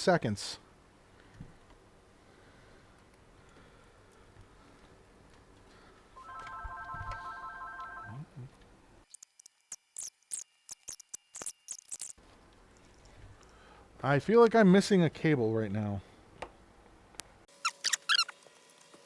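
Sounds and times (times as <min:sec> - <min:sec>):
electronic pulsing ringtone: 0:06.2 - 0:08.2.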